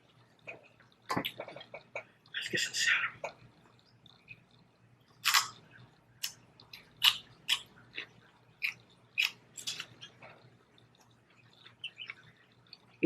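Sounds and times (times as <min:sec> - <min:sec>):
celery crunching: 0:05.2 - 0:05.6.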